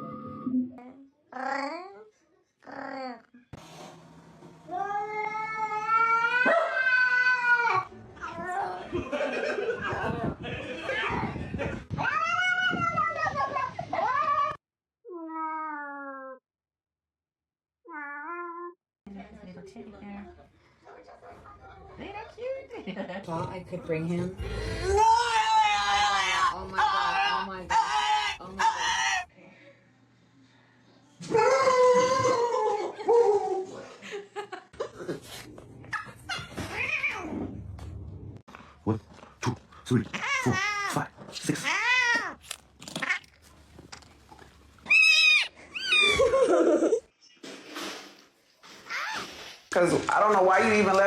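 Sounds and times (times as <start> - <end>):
person laughing hard: 46.0 - 47.0.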